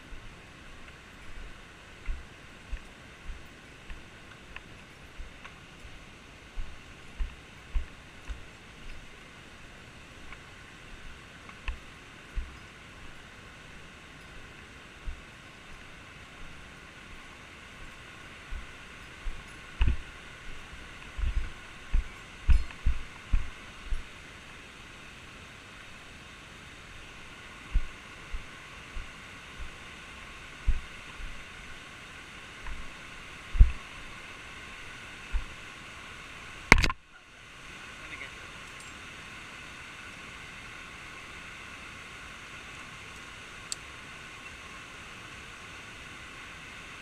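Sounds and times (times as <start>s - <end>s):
steady background hiss: 0.0s - 47.0s
camera handling noise: 36.7s - 37.0s
sharp click: 36.7s - 37.0s.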